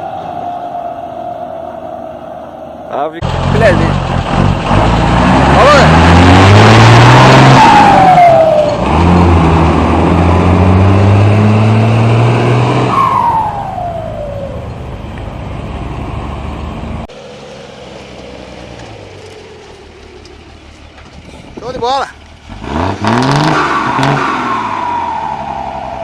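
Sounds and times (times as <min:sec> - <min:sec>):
falling turbo whistle: 0:00.0 - 0:02.9, 0:07.2 - 0:08.9, 0:12.7 - 0:14.7, 0:23.2 - 0:26.0
diesel engine running hard: 0:02.9 - 0:26.0.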